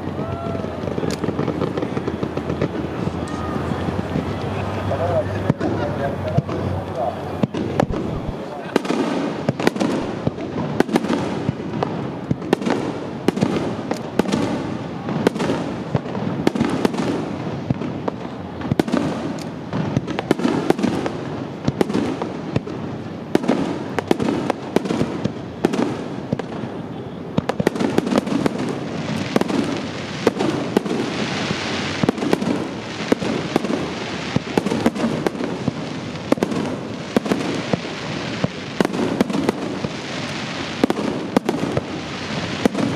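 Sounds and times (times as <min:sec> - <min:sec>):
hissing crackle: 0:00.0 - 0:18.4, 0:27.4 - 0:42.9
fireworks bursting: 0:00.0 - 0:42.9.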